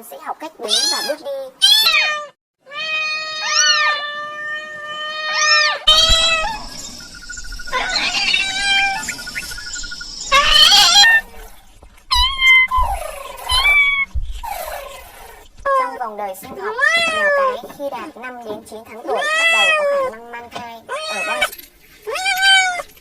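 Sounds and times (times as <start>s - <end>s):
kittens meowing: 1.6s - 15.4s.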